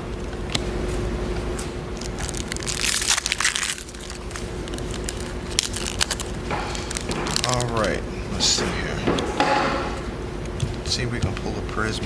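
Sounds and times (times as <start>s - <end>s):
foil wrapper crinkling and tearing: 1.9s - 8.0s.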